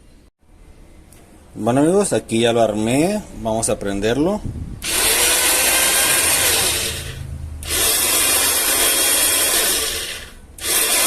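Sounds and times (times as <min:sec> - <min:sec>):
blender motor whirring: 0:04.8 - 0:11.0.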